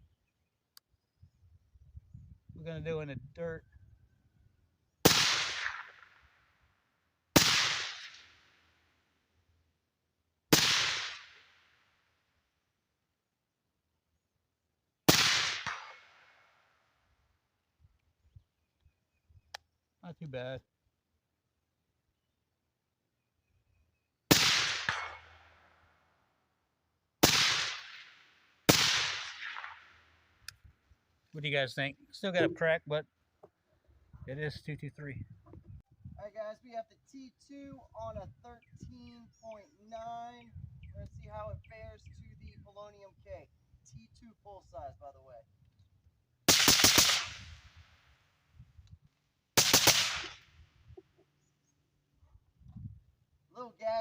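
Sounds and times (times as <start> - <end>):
suppressed rifle shots: 5.0 - 6.2, 7.4 - 8.4, 10.5 - 11.5, 15.1 - 16.4, 24.3 - 25.5, 27.2 - 29.9, 46.5 - 47.5, 49.6 - 50.5
bullet crack: 5.0 - 6.4, 7.4 - 8.6, 10.5 - 11.8, 15.1 - 16.6, 24.3 - 25.7, 27.2 - 30.6, 46.5 - 47.7, 49.6 - 50.5.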